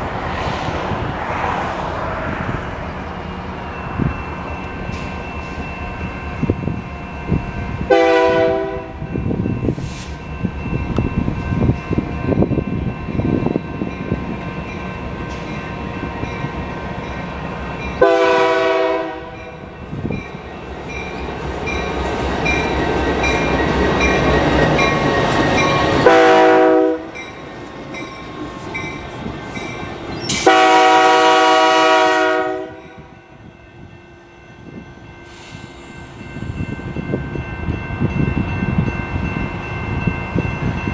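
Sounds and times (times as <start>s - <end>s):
train clattering: 3.0s - 32.4s
locomotive air horn blasts: 7.8s - 9.1s, 18.0s - 19.5s, 26.0s - 27.2s, 30.3s - 33.1s.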